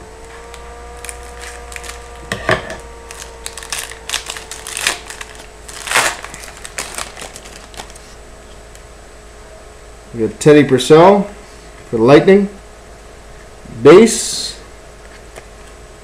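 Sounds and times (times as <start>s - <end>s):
wrapper tearing and crinkling: 0.9s - 2.2s, 3.0s - 8.2s.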